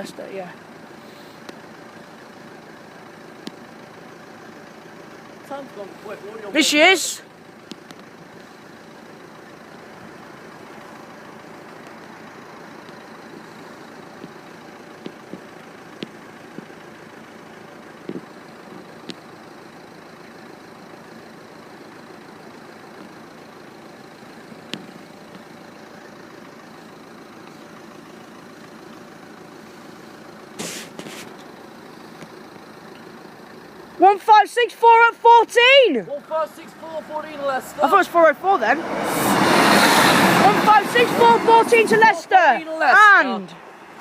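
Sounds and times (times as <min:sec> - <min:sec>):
diesel train passing: 0:36.1 - 0:44.0.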